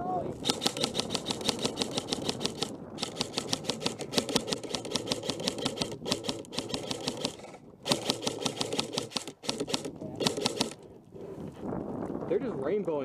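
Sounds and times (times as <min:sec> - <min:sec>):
airsoft guns firing full-auto: 0:00.4 - 0:10.8.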